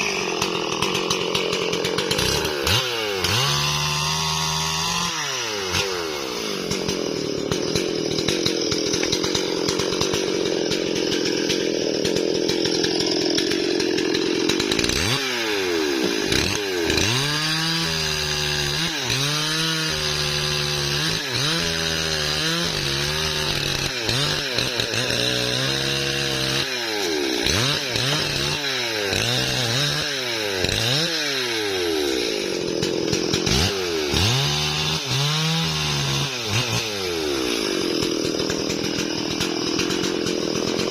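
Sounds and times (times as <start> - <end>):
chainsaw revving: 0.0 - 40.9.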